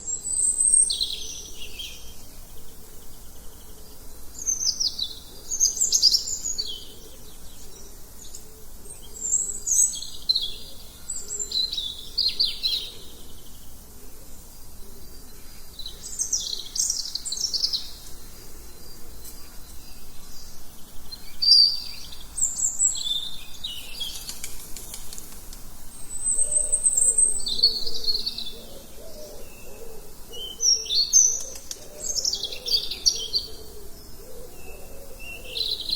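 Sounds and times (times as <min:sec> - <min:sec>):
songbirds chirping: 0:00.0 - 0:35.9.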